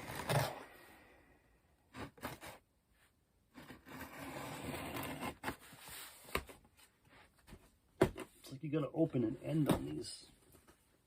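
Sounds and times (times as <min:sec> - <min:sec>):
cardboard scraping and rubbing: 0:00.0 - 0:00.6, 0:01.9 - 0:02.6, 0:03.5 - 0:07.3.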